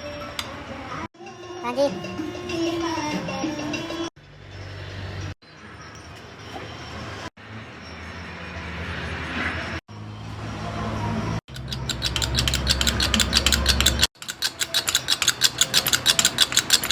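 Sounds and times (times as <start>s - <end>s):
fast mechanical clicking: 11.5s - 16.9s.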